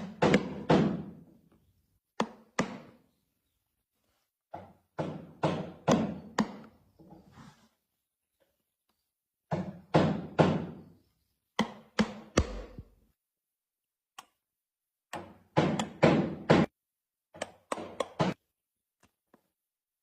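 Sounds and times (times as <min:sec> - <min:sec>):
tool knocking on wood: 0:11.6 - 0:12.9.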